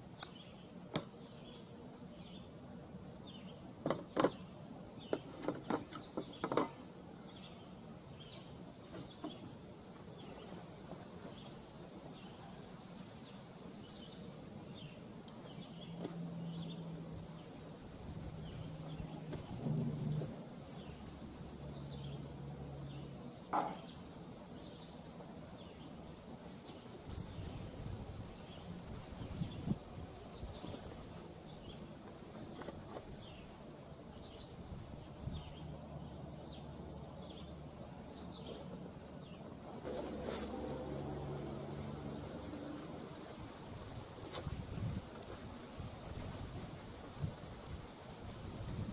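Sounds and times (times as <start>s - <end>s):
bird chirping: 0.0s - 17.8s
small birds chirping: 0.0s - 40.9s
outdoor background noise: 0.0s - 48.9s.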